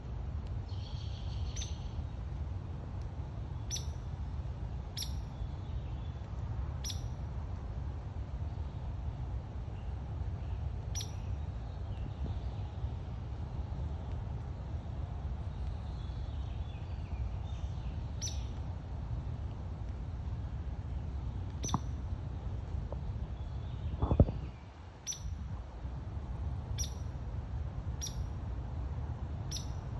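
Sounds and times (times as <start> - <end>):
steady low rumble: 0.0 - 29.9
woodpecker pik calls: 1.5 - 1.9, 3.7 - 4.0, 5.0 - 5.2, 6.8 - 7.1, 10.9 - 11.3, 18.1 - 18.6, 21.6 - 22.0, 25.0 - 25.3, 26.8 - 27.1, 28.0 - 28.3, 29.5 - 29.9.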